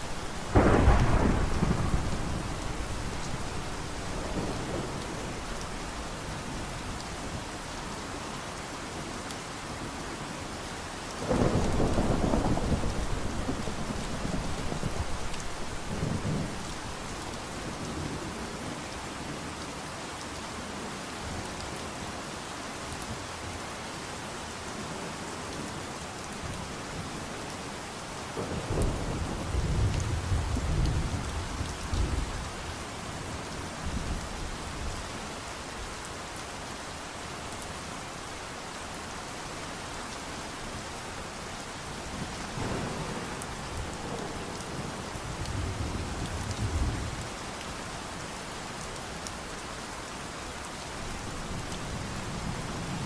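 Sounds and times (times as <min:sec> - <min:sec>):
thunder rumbling: 0:00.0 - 0:06.9, 0:11.3 - 0:17.7, 0:42.0 - 0:47.2
steady rain falling: 0:00.0 - 0:53.0.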